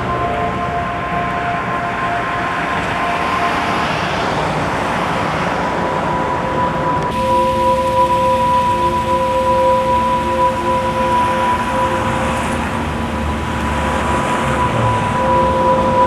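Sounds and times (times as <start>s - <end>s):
steady rushing traffic noise: 0.0s - 16.0s
faint held tones: 5.9s - 16.0s.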